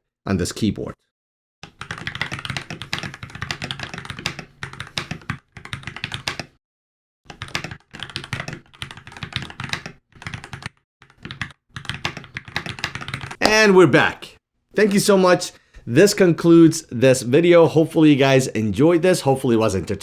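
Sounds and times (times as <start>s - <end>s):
fast typing on mechanical keyboard: 1.6s - 6.6s, 7.3s - 13.4s.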